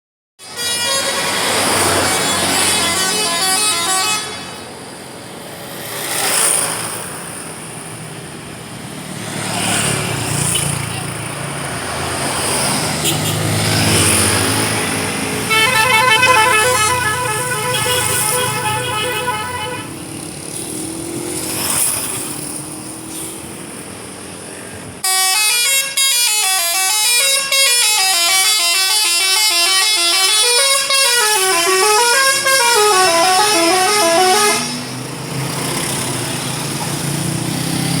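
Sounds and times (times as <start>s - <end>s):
musical bus horn: 0.4s - 4.8s, 12.9s - 13.5s, 15.4s - 20.1s, 25.0s - 35.0s
engine and street noise: 0.4s - 38.0s.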